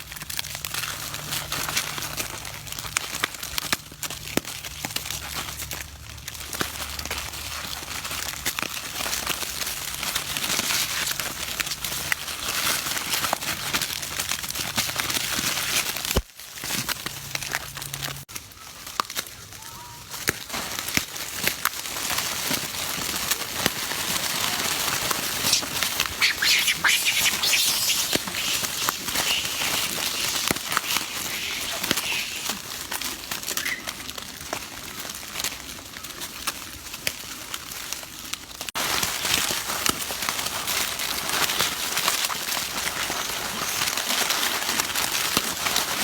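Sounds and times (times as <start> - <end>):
short animal calls: 25.4 - 32.6.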